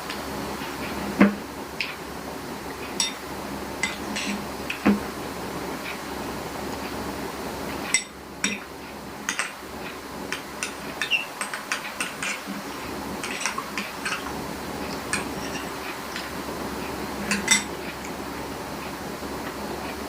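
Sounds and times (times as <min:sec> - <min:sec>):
utensil clinking against a dish: 0:03.0 - 0:03.2, 0:03.8 - 0:04.4, 0:07.9 - 0:08.7, 0:09.3 - 0:09.6, 0:10.3 - 0:16.4, 0:17.2 - 0:17.8.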